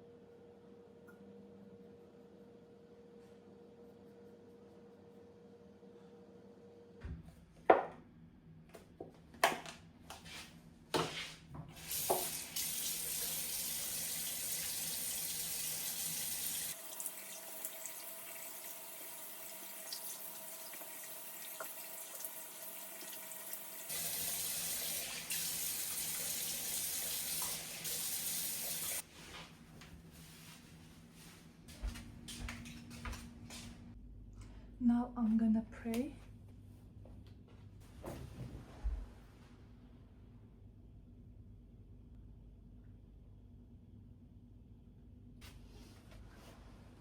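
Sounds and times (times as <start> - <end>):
tap water running into sink: 11.8 - 29.0.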